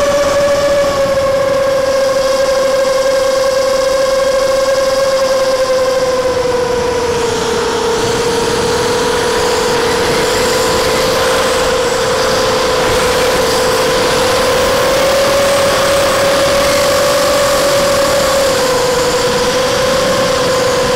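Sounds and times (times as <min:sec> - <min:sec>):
drone motors whining: 0:00.0 - 0:20.9.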